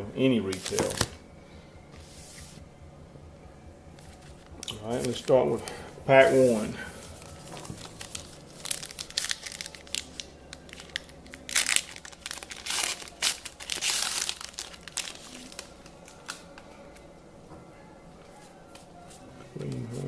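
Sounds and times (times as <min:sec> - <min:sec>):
wrapper crinkling and tearing: 0:00.5 - 0:01.2, 0:07.1 - 0:16.6.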